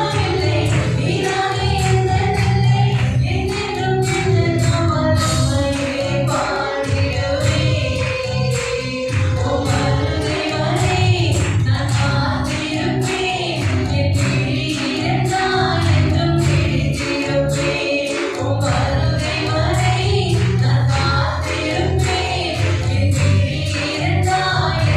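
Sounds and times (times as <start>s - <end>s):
choir singing worship song: 0.0s - 24.9s
instrumental accompaniment with beat: 0.0s - 24.9s.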